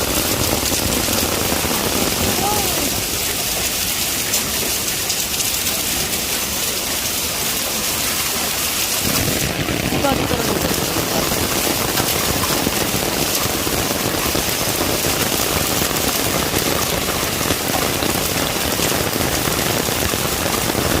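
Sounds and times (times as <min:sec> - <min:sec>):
heavy rain and hail pelting ground: 0:00.0 - 0:21.0
strong wind rumble: 0:09.0 - 0:14.5.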